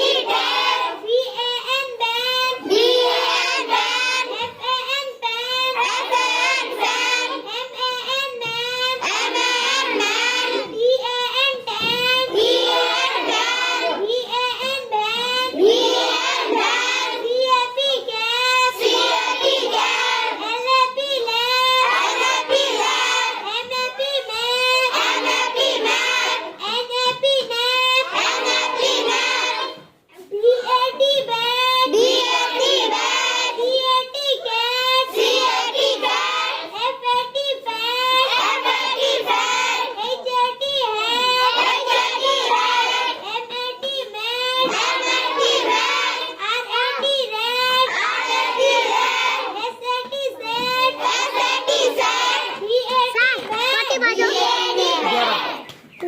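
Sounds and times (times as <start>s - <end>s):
children chanting in sing-song: 0.0s - 56.0s.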